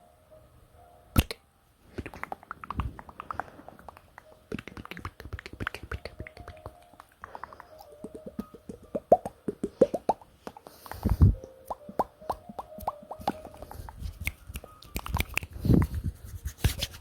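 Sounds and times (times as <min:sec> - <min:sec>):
mouth pop: 0:01.2 - 0:01.4
tongue clicks: 0:01.2 - 0:15.9
lip smacks: 0:01.2 - 0:16.0.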